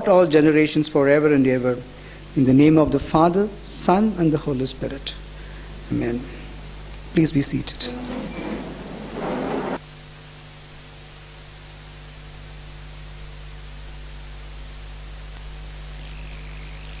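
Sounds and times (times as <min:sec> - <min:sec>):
steady hiss: 0:03.9 - 0:09.8.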